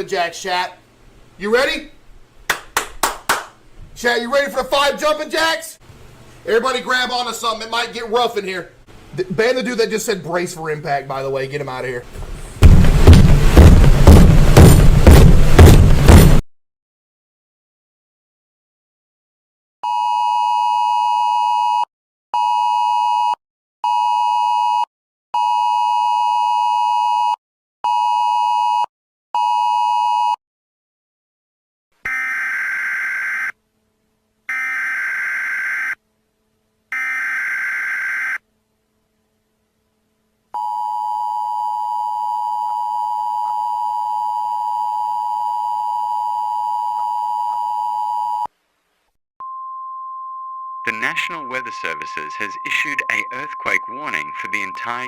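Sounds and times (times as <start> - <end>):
two-tone attention signal: 50.8 - 55.0
steady beeps: 50.9 - 55.0.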